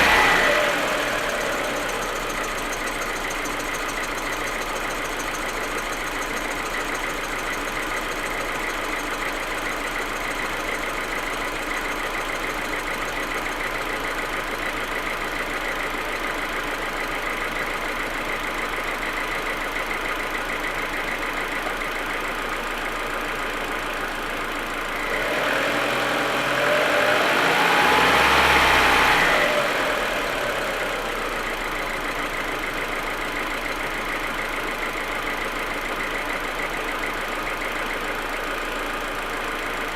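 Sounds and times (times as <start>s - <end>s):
engine idling roughly and misfiring: 0.0s - 39.9s.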